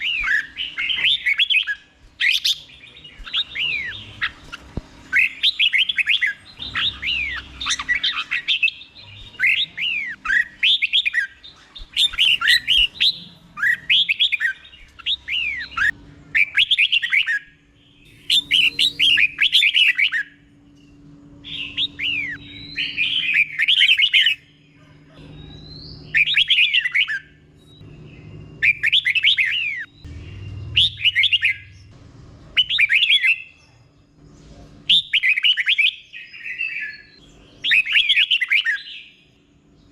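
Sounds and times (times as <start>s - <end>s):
bulbul singing: 0.0s - 39.9s.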